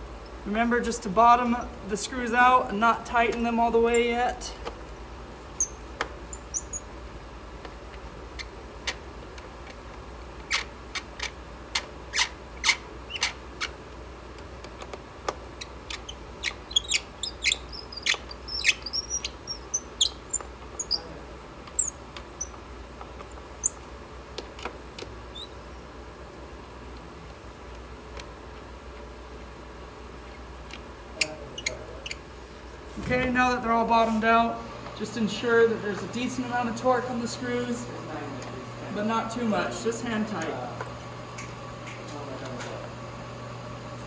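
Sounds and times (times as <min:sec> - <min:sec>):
short high squeaks: 0:05.6 - 0:06.9, 0:15.6 - 0:22.6, 0:23.2 - 0:23.9, 0:25.3 - 0:25.9, 0:31.2 - 0:32.3.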